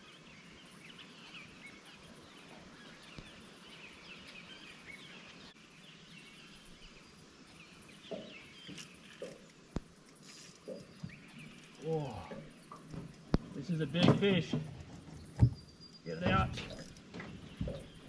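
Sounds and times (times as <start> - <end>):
birds chirping: 0.0 - 18.0
low outdoor hiss: 0.0 - 18.0
soft low knocks: 12.2 - 18.0.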